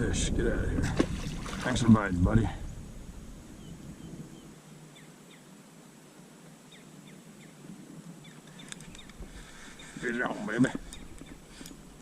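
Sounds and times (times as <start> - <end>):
faint bird chirps: 3.5 - 5.5, 6.6 - 7.6, 8.2 - 10.2.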